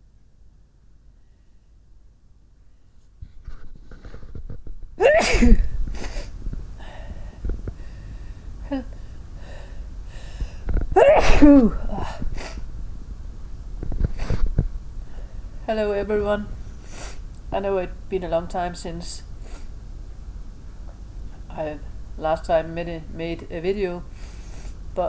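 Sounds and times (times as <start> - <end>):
person sneezing loudly: 5.0 - 6.3, 11.0 - 12.6.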